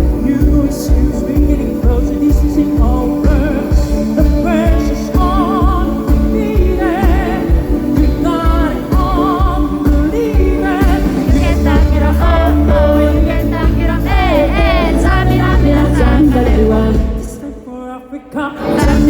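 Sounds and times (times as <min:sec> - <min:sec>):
band with heavy bass drum: 0:00.0 - 0:17.5, 0:18.6 - 0:19.0
man singing with vibrato: 0:00.0 - 0:19.0.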